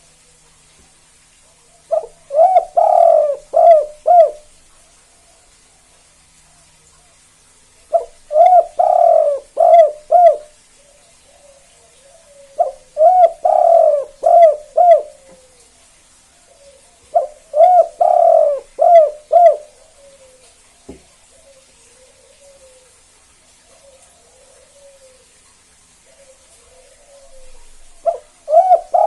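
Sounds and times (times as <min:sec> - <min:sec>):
dove cooing: 0:01.5 - 0:04.6, 0:07.8 - 0:15.7, 0:16.5 - 0:25.4, 0:26.0 - 0:29.0.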